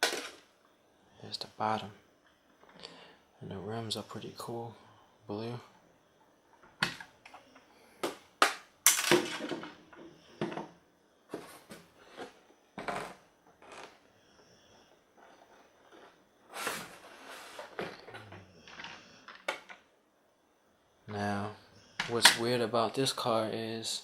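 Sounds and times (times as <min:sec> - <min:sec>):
plastic toy car clicks and knocks: 0:00.0 - 0:00.4, 0:08.0 - 0:09.8, 0:18.7 - 0:19.8
plastic rustling scrapes: 0:15.3 - 0:18.0.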